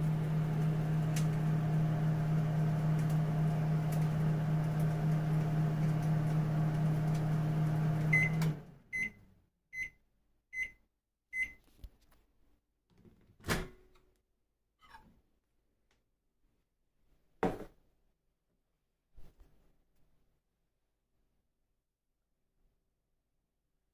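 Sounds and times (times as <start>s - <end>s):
microwave oven humming: 0.0s - 9.4s
microwave beeps: 7.8s - 10.0s, 10.6s - 10.8s, 11.4s - 11.6s.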